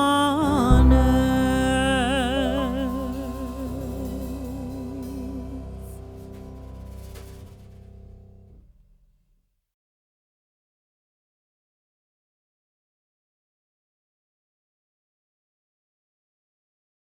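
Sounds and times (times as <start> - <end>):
music with wavering note: 0.0 - 8.6.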